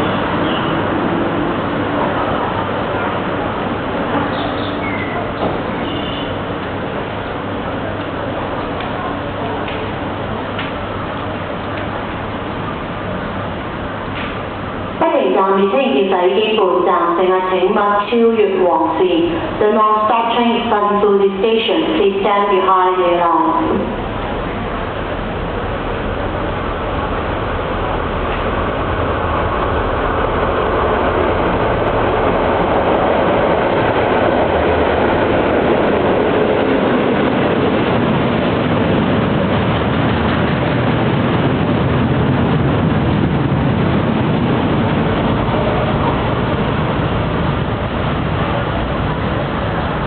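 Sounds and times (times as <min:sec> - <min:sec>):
freight train rumbling past: 0:00.0 - 0:50.0.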